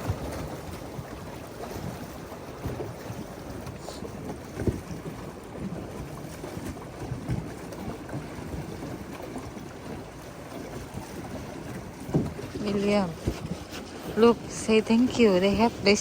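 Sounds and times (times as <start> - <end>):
water around a boat: 0.0 - 16.0
wind on microphone: 0.0 - 16.0.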